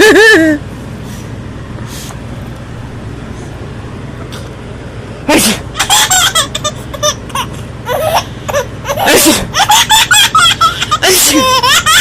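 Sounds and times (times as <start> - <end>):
baby laughing: 5.8 - 12.0.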